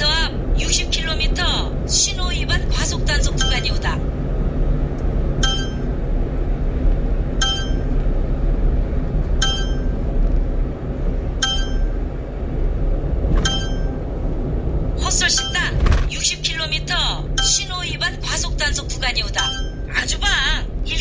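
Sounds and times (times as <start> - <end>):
road noise: 0.0 - 21.0
truck engine drone: 0.0 - 21.0.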